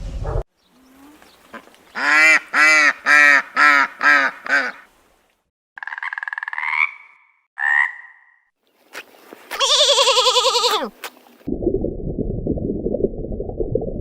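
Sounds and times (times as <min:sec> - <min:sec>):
waterfowl honking: 0:01.0 - 0:04.9.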